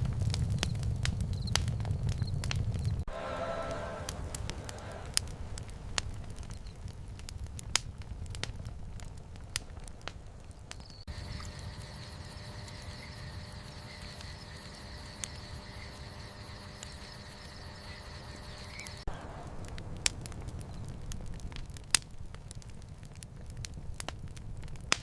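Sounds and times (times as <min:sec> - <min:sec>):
fire crackling and popping: 0:00.0 - 0:25.0
insect drone: 0:10.9 - 0:19.1.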